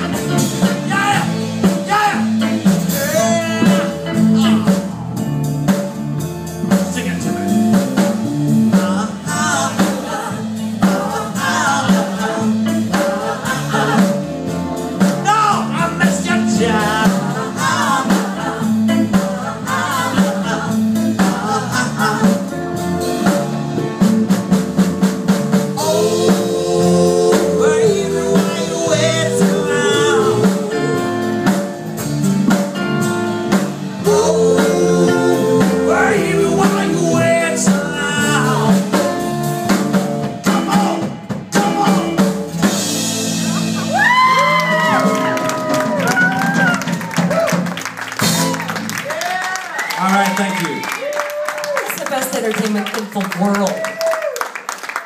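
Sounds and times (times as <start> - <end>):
live blues band playing: 0.0 - 55.0
bending lead guitar melody: 22.1 - 49.0.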